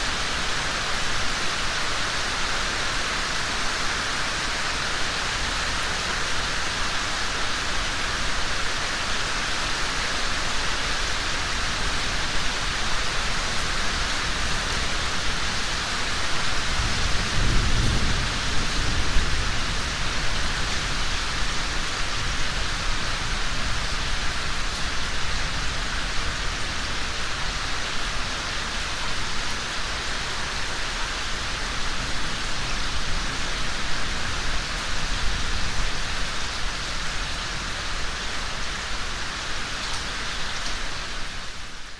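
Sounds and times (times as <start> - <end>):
rain on ground and foliage: 0.0 - 41.9.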